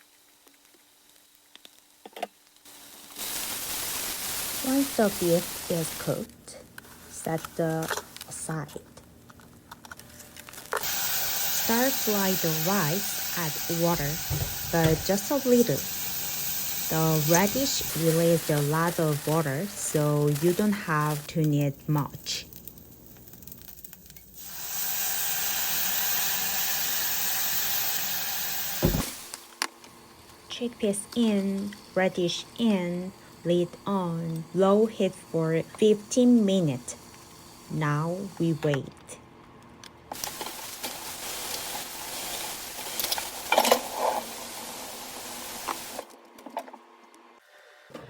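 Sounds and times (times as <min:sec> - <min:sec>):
rice sizzling in a hot pot: 0:00.0 - 0:08.5, 0:10.4 - 0:38.5, 0:40.2 - 0:46.1.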